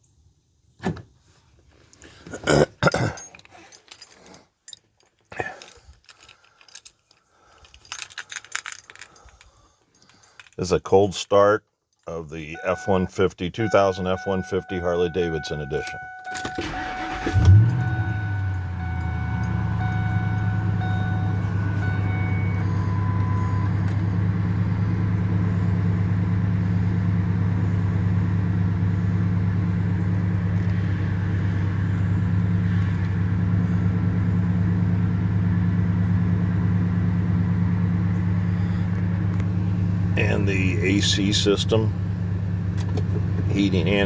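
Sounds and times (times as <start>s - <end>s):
thin high tone: 12.5s - 23.9s
engine starting and idling: 12.6s - 44.0s
starter motor cranking: 16.3s - 24.0s.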